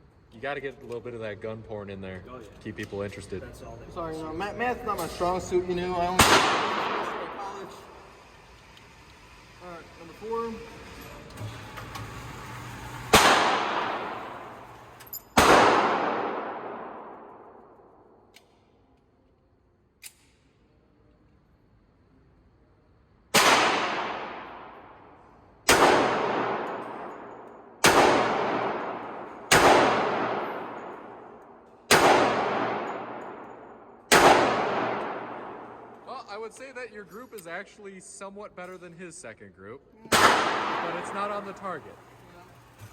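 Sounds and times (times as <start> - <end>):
pistol shots echoing: 6.1 - 7.9, 13.1 - 18.0, 23.3 - 36.1, 40.1 - 41.7.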